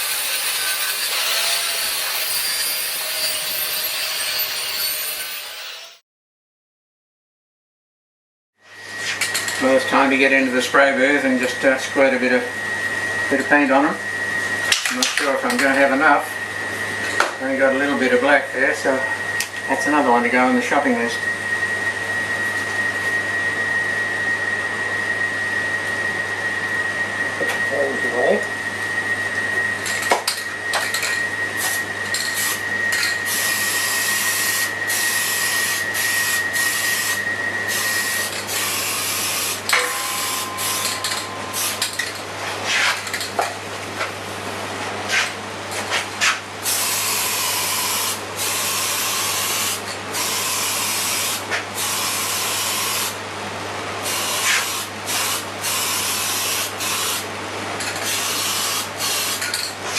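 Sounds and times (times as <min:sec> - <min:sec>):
thin steady whistle: 0:21.0 - 0:42.1.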